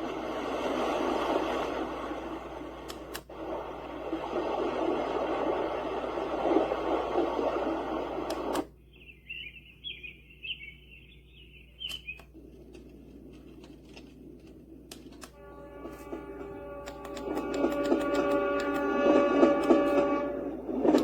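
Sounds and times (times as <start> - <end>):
steady rushing noise: 0.0 - 8.7
high chirping nature sound: 8.7 - 12.3
soft tonal melody: 15.2 - 21.0.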